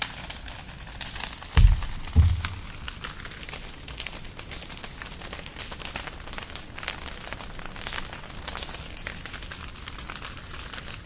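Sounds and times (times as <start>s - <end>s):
firewood crackling: 0.0s - 11.0s
loud low thump: 1.6s - 2.9s.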